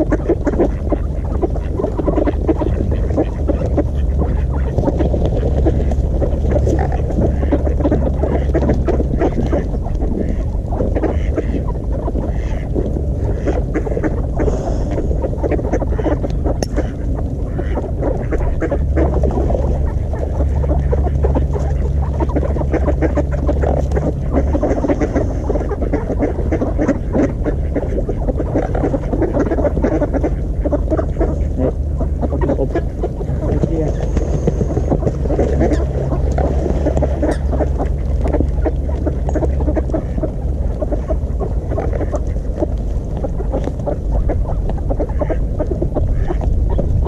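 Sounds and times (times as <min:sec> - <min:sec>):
ducks quacking: 0:00.0 - 0:47.0
steady low rumble: 0:00.0 - 0:47.0.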